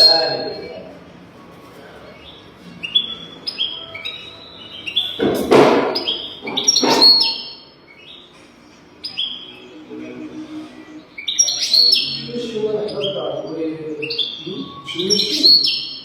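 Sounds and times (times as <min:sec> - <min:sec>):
finch twittering song: 0:02.1 - 0:16.0
harsh rasping bird notes: 0:02.8 - 0:16.0.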